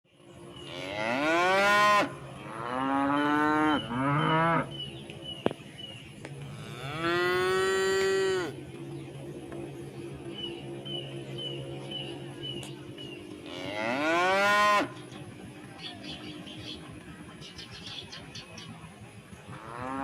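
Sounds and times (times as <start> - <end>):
cows mooing: 0.6 - 4.9, 6.4 - 8.7, 13.3 - 15.0, 19.5 - 20.0.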